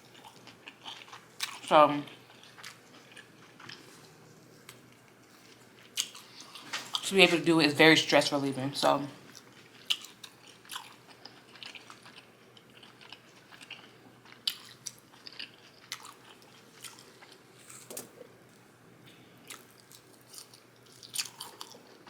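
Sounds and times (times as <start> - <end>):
person chewing with wet mouth smacks: 9.4 - 18.1.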